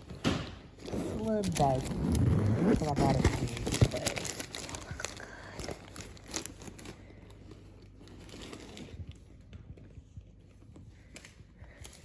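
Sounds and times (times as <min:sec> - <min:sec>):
bag rustling and crinkling: 0:00.7 - 0:09.5.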